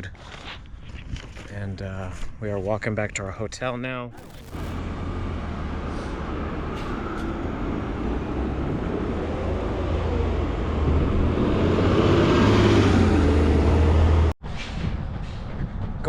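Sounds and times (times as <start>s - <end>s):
rumble of car traffic: 4.4s - 14.4s
vehicle passing: 4.8s - 14.3s.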